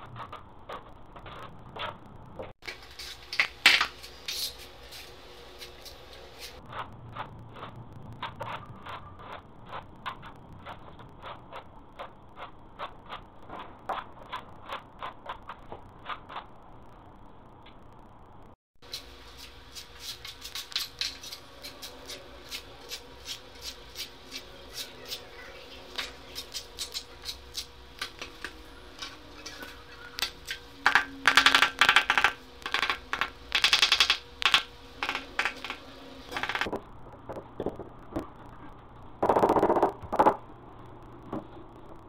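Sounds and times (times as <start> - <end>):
small hard objects clicking: 30.2 - 38.3.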